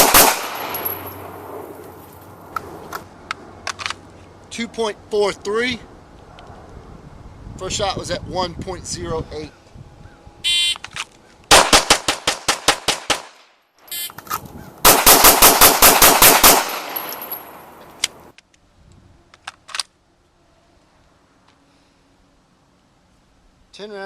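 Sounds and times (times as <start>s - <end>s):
handgun shots: 0.0s - 1.1s, 11.5s - 13.4s, 14.9s - 17.5s
gunshot echo: 0.0s - 1.5s, 11.5s - 13.4s, 14.9s - 17.4s.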